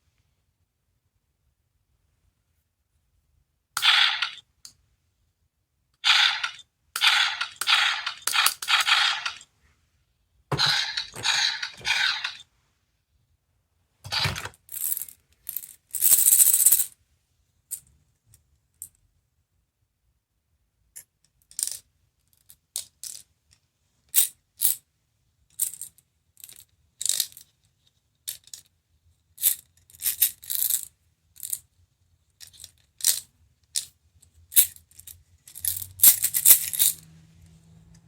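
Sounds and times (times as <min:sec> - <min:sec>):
toy speaker sound clips: 0:03.8 - 0:04.4, 0:06.0 - 0:09.4, 0:10.5 - 0:12.4.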